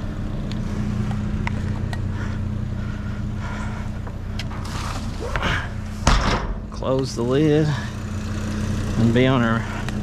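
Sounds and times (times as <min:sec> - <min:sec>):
vehicle engine idling: 0:00.0 - 0:10.0.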